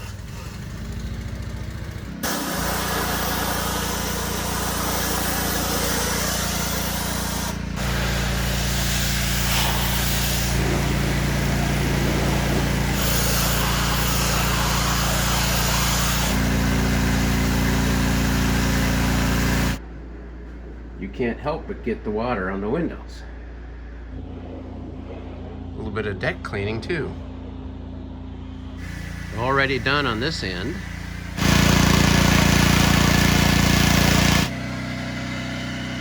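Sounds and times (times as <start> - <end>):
pressure washer engine hum: 0.0 - 19.8, 28.4 - 36.0
water jet hissing: 2.2 - 19.8, 28.8 - 34.5.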